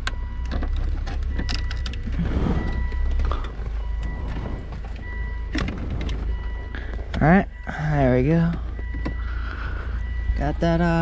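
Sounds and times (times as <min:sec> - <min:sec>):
plastic parts clicking and creaking: 0:00.0 - 0:02.2.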